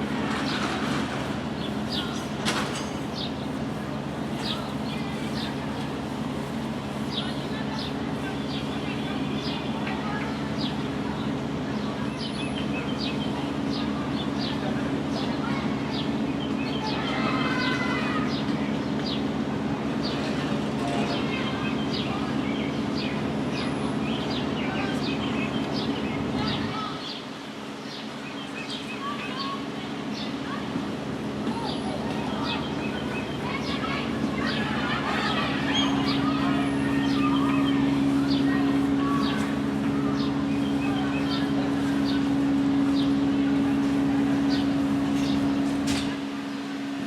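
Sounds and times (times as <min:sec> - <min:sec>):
birds chirping: 0:00.0 - 0:47.0
low mechanical hum: 0:00.0 - 0:47.0
machine humming: 0:32.2 - 0:47.0.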